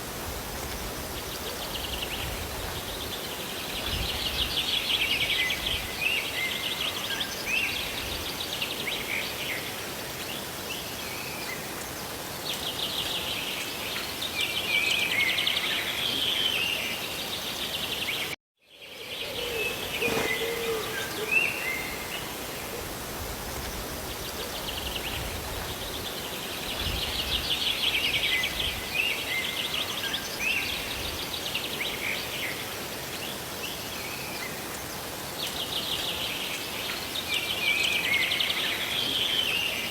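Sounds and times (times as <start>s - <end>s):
rain and falling water: 0.0s - 18.4s, 19.6s - 39.9s
songbirds chirping: 0.6s - 39.9s.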